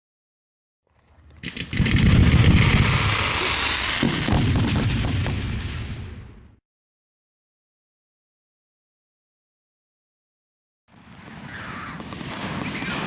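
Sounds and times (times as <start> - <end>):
fireworks booming and crackling: 1.2 - 6.6, 10.9 - 13.0.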